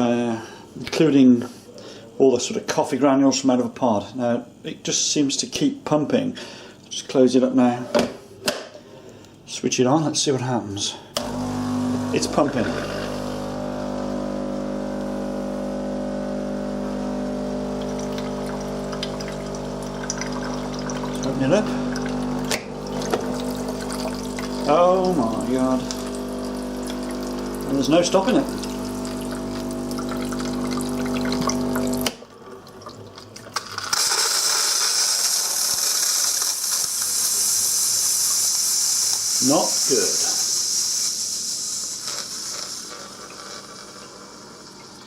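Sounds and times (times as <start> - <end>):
water pump humming: 11.2 - 34.6, 42.3 - 45.0
steady high hiss: 34.2 - 43.8.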